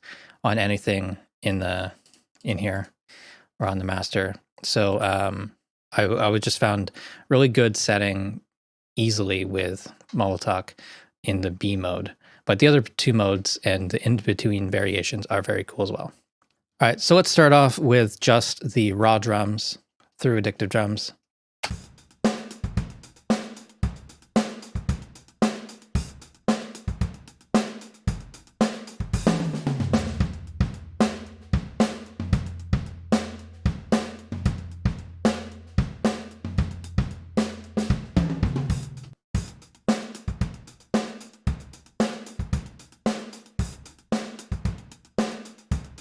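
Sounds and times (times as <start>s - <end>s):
drum kit playing a groove: 21.6s - 46.0s.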